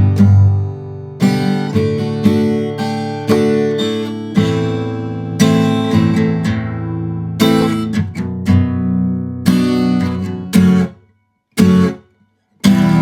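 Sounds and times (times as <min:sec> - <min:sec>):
acoustic guitar strumming: 0:00.0 - 0:13.0.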